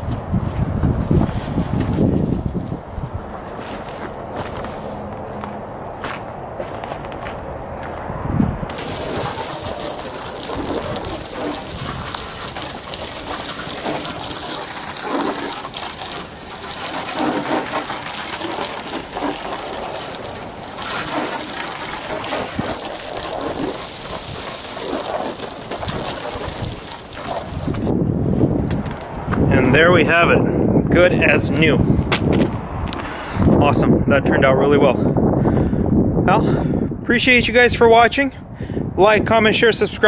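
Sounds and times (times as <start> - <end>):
water spraying: 8.7 - 28.0.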